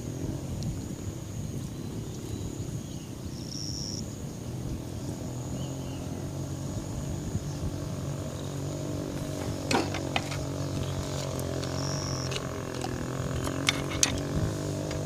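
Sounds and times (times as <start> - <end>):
low engine hum: 0.0 - 15.0.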